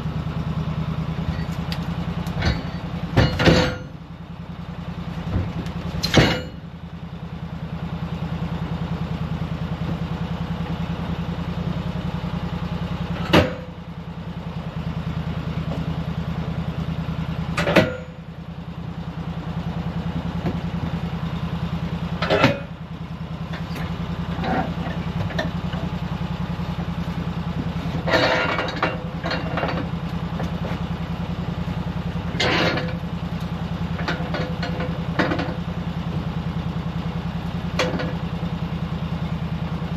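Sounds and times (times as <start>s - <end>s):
sawmill engine idling: 0.0s - 39.9s.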